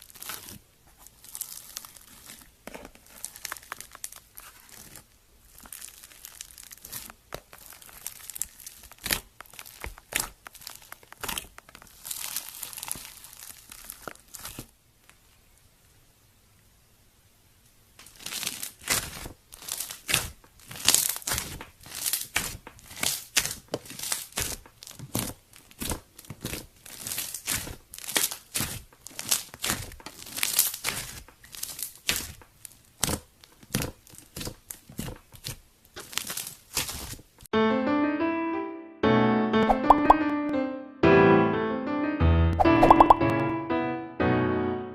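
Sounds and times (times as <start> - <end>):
slime squished crackling and popping: 0.0 - 14.7, 18.0 - 37.5
cheerful music: 37.6 - 44.9.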